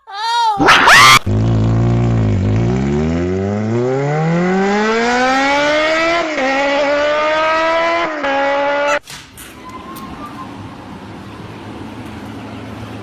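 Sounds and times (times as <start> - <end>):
vehicle engine accelerating: 0.6 - 9.0.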